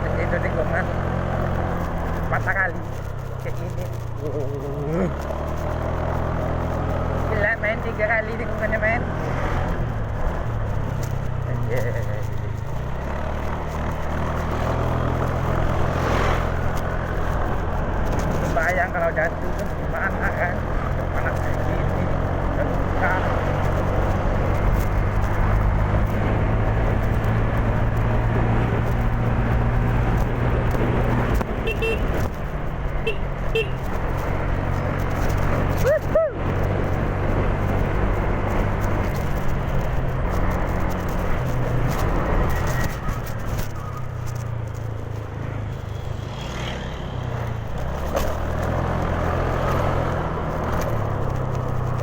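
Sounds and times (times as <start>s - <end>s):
road noise: 0.0s - 52.0s
scooter engine running: 0.0s - 52.0s
wind noise: 19.3s - 52.0s.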